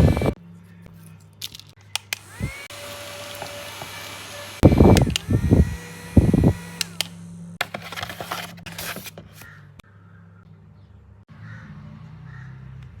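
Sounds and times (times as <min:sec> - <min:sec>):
handheld fan motor whine: 0:00.0 - 0:00.4, 0:02.0 - 0:09.4
clicks and rustling of handling: 0:00.9 - 0:02.6, 0:06.5 - 0:09.6.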